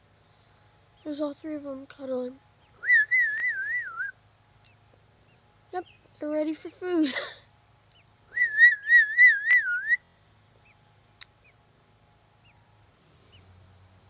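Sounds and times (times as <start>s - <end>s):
baby birds chirping: 1.0s - 6.9s, 10.6s - 11.6s, 12.4s - 12.7s.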